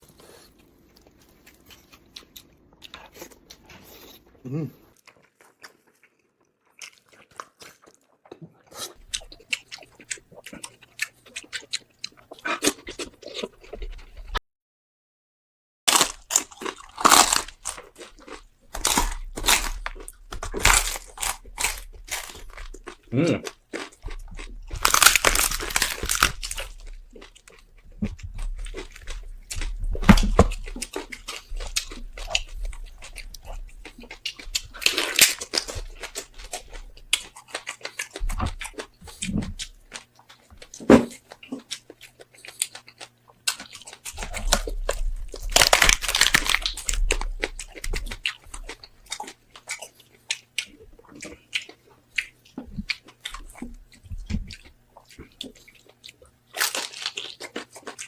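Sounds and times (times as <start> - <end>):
crunching and chewing: 0.0 - 14.4, 15.9 - 58.0.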